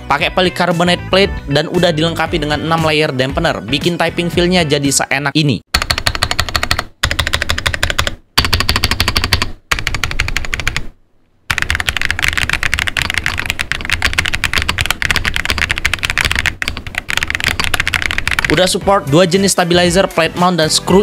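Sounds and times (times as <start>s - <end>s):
fast typing on mechanical keyboard: 5.8s - 10.9s, 11.5s - 18.7s.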